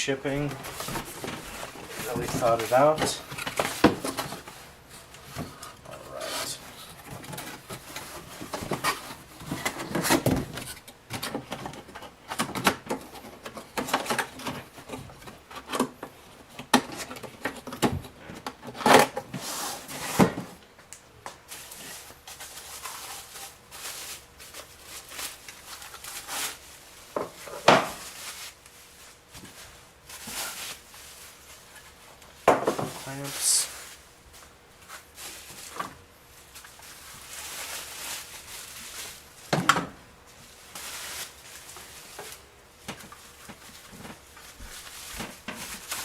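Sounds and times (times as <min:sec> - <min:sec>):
cardboard and packing rustling: 0:00.2 - 0:20.7, 0:21.3 - 0:46.0.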